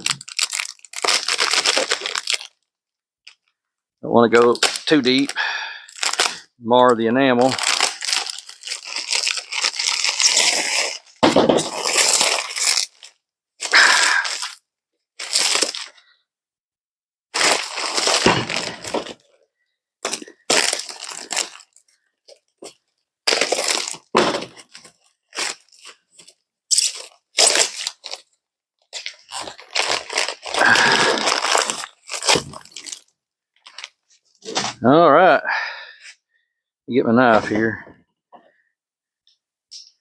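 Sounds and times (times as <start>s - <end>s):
plastic wrapping crinkling: 0.0s - 3.6s, 4.4s - 6.5s, 7.4s - 14.6s, 15.2s - 16.0s, 17.4s - 19.4s, 20.0s - 28.3s, 28.9s - 34.7s.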